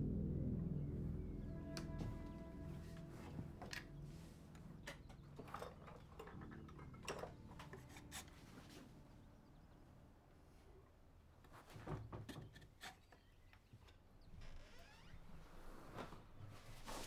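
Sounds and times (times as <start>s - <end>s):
low background hum: 0.0s - 11.4s.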